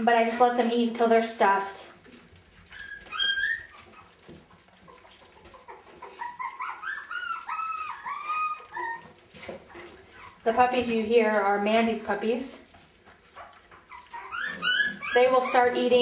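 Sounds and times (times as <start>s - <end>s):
puppies whining and squealing: 2.5s - 10.5s, 13.1s - 16.0s.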